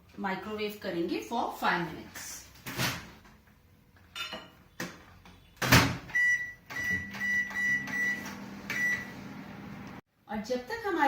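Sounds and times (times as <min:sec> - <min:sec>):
short high keypad beeps: 0:06.1 - 0:09.1
microwave oven humming: 0:06.3 - 0:10.0.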